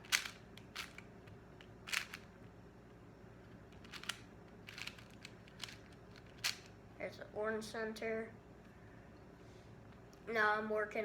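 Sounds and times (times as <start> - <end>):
puzzle cube turning clicks: 0.0 - 2.3, 3.5 - 6.7.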